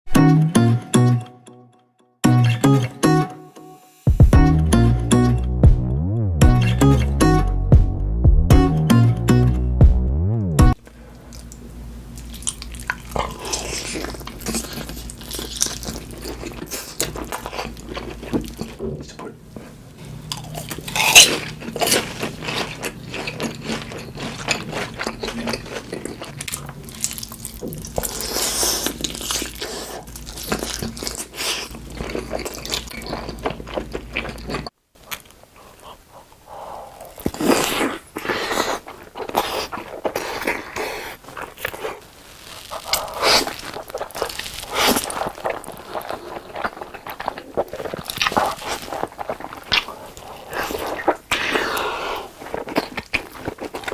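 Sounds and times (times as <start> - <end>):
people crunching and chewing food: 10.9 - 53.9.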